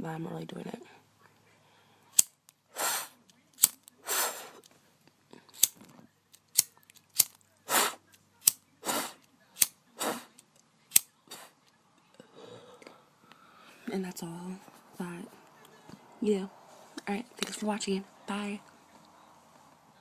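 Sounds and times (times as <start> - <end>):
lighter clicking: 3.6 - 3.9.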